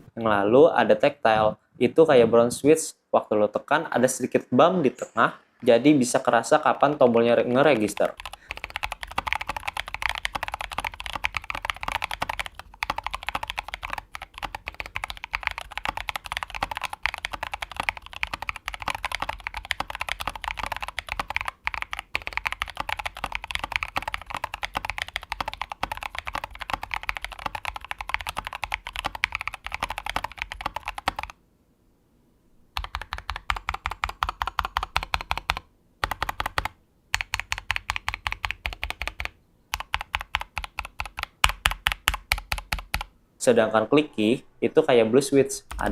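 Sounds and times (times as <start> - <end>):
mechanical keyboard typing: 6.7 - 31.4, 32.8 - 43.1.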